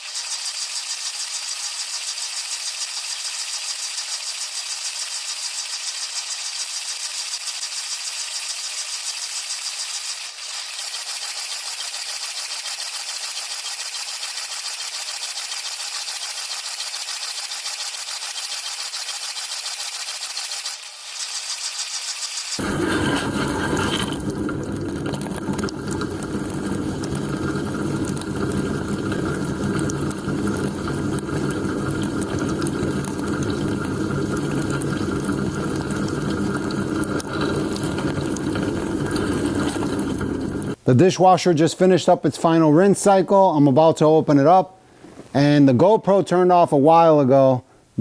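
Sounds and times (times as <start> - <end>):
fast even rattle: 0.0 - 24.1
water spray hissing: 0.0 - 24.4.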